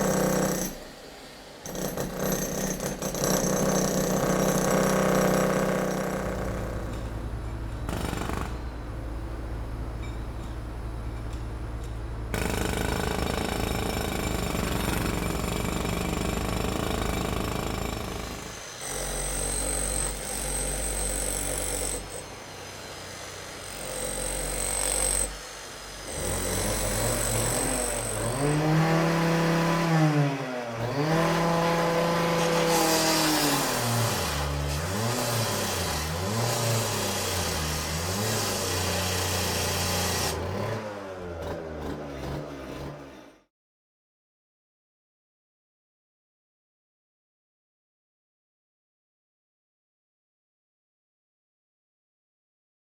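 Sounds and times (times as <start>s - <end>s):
cut-off saw engine revving: 28.3s - 43.4s.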